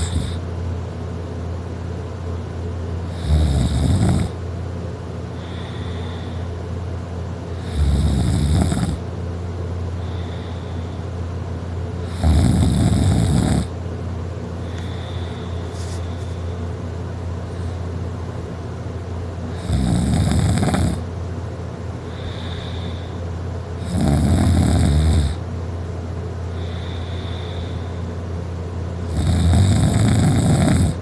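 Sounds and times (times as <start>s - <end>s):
man snoring: 0.0s - 0.5s, 3.1s - 4.4s, 5.4s - 6.5s, 7.6s - 9.0s, 12.0s - 13.8s, 14.6s - 15.8s, 19.5s - 21.1s, 22.1s - 23.2s, 23.8s - 25.5s, 26.6s - 28.0s, 29.1s - 31.0s
steady low hum: 0.0s - 31.0s.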